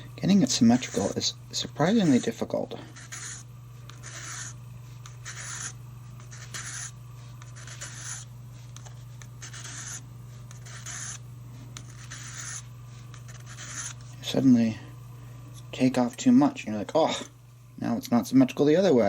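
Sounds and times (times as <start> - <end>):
steady low hum: 0.0 - 19.0
hand file rasping: 1.8 - 3.4.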